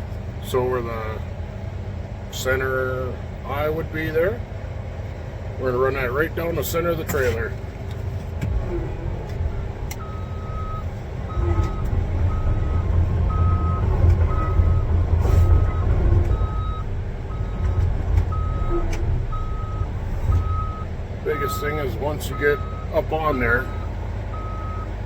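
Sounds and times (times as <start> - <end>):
bulldozer diesel engine running: 0.0 - 25.0
reverse alarm beeping: 10.0 - 25.0.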